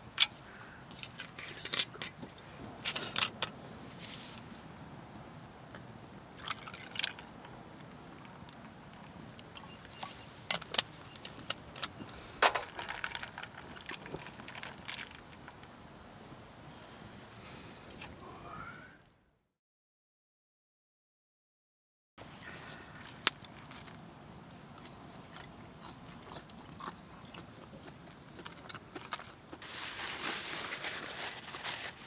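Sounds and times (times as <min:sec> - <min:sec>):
hot oil spitting and popping: 0:10.5 - 0:15.8.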